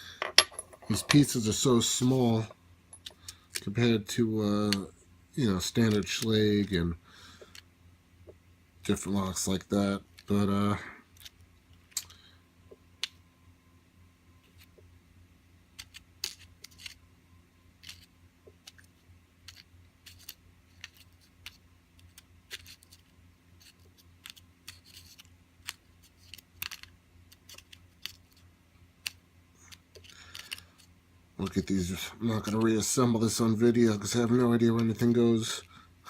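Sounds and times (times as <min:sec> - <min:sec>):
faint low hum: 0:00.0 - 0:36.0
small metal parts clicking: 0:24.2 - 0:26.9.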